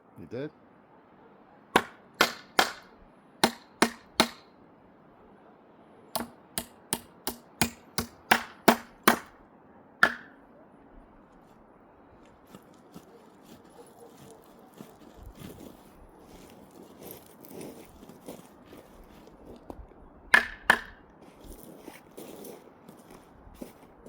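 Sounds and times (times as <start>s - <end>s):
hammer driving nail into wood: 1.8s - 4.4s, 6.2s - 9.3s, 10.0s - 10.4s, 20.3s - 21.0s.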